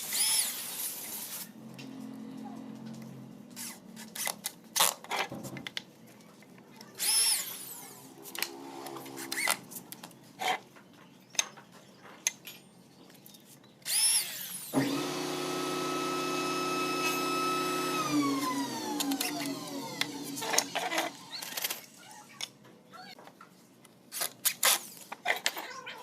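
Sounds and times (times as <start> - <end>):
power tool motor whine: 7.0 - 9.6, 13.9 - 21.5.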